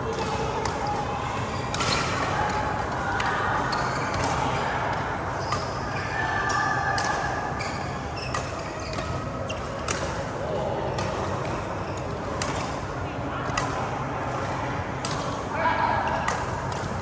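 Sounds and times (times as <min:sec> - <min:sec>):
sports hall noise: 0:00.0 - 0:17.0
rackets hitting shuttlecock: 0:00.1 - 0:03.3, 0:07.9 - 0:12.8, 0:13.4 - 0:15.5, 0:16.1 - 0:17.0.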